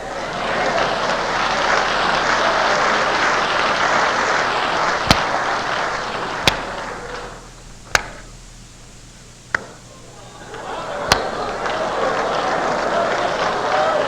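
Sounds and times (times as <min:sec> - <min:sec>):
congregation applauding: 0:00.0 - 0:07.6, 0:09.9 - 0:14.0
loud sharp single hits: 0:05.0 - 0:05.6, 0:06.3 - 0:07.0, 0:11.0 - 0:11.5.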